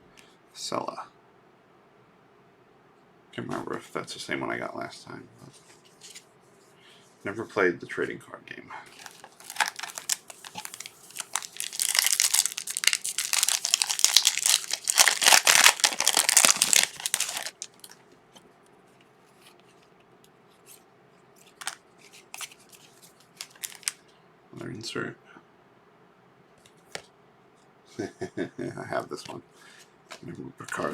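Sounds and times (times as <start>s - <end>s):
wrapper tearing and crinkling: 8.9s - 18.0s, 21.6s - 22.6s, 23.2s - 24.0s.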